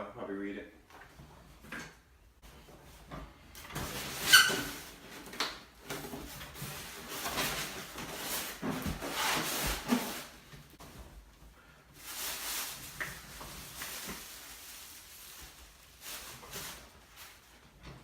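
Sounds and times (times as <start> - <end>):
packaging rustling and scraping: 3.6 - 11.2, 11.9 - 17.9.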